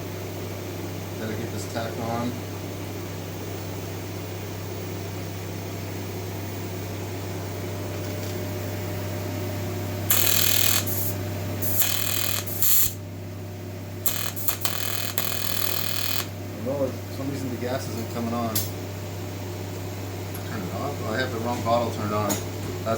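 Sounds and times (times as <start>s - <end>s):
welding machine hum: 10.0s - 13.0s, 13.9s - 16.5s
welding arc crackling hiss: 10.1s - 13.0s, 14.0s - 16.4s.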